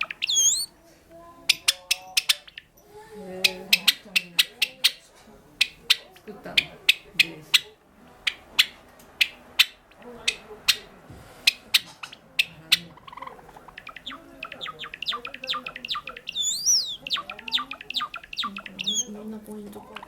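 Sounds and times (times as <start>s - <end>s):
sparrow chirping: 0.0s - 0.7s, 1.4s - 5.0s, 5.6s - 20.0s
sparrow clicking notes: 0.0s - 0.7s, 1.5s - 2.7s, 3.4s - 5.0s, 11.5s - 19.2s
bird whistle rising and falling: 0.2s - 0.7s, 15.0s - 17.2s, 18.8s - 19.1s.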